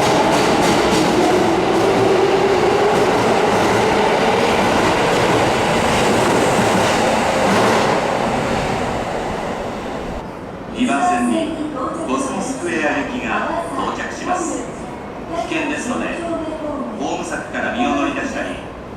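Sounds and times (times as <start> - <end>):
train rolling noise: 0.0 - 10.7.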